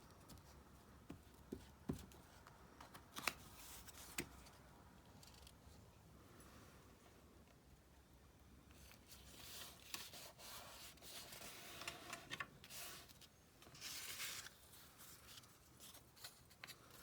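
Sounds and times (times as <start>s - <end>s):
paper rustling: 8.8s - 17.0s.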